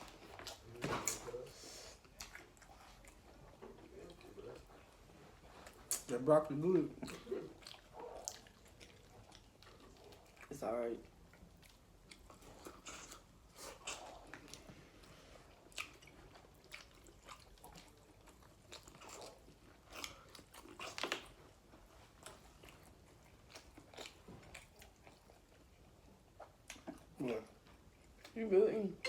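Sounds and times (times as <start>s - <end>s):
chewing and biting: 2.0s - 6.2s, 6.9s - 28.4s.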